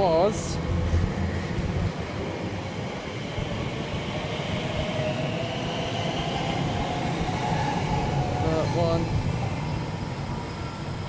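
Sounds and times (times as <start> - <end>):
train rail rumble: 0.0 - 11.0.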